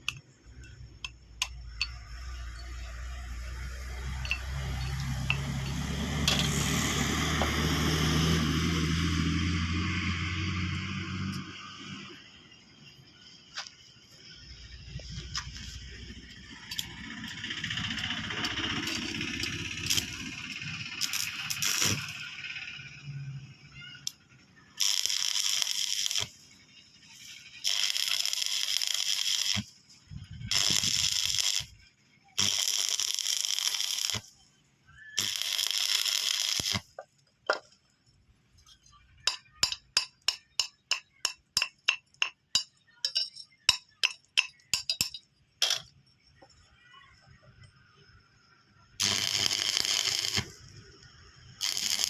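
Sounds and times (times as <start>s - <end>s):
arc welding hiss: 17.4s - 22.6s, 24.8s - 26.4s, 27.2s - 29.8s, 30.5s - 31.7s, 32.4s - 34.3s, 35.2s - 36.9s, 49.0s - 52.0s
sharp metallic taps: 39.3s - 45.8s.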